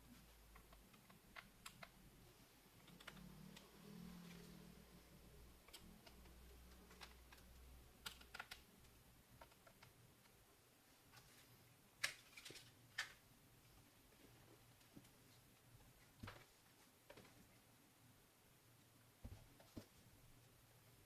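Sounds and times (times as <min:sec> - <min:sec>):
laptop keys clicking: 0:02.8 - 0:03.7, 0:05.6 - 0:08.7.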